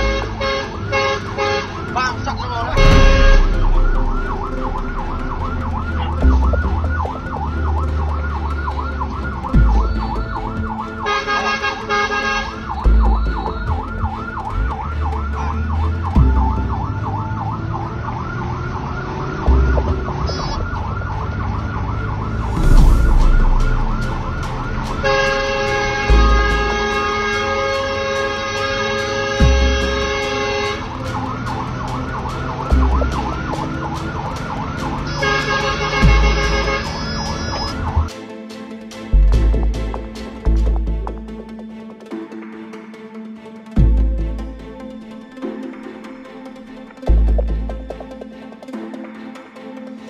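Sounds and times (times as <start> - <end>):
electronic siren yelping: 0.0 - 38.1
truck rumbling: 0.0 - 38.1, 39.0 - 42.5, 43.8 - 48.8.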